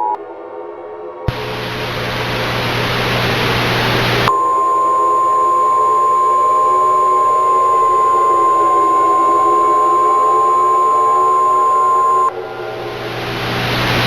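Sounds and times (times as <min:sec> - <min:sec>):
hissing static: 0:01.3 - 0:12.3.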